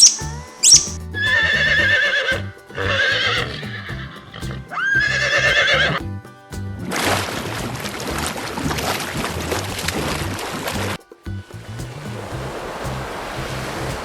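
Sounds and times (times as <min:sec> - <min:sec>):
background music: 0:00.0 - 0:14.0
horse whinnying: 0:01.3 - 0:06.0.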